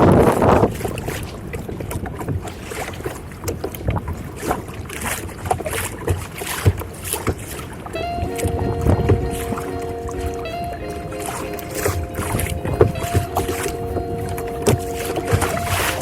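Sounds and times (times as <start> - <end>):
water splashing against kayak: 0.1 - 9.7, 11.2 - 16.0
music: 8.0 - 16.0.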